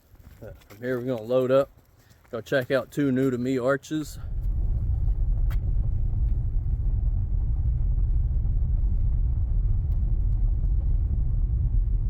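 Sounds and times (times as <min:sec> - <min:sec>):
car road rumble: 0:04.0 - 0:12.0.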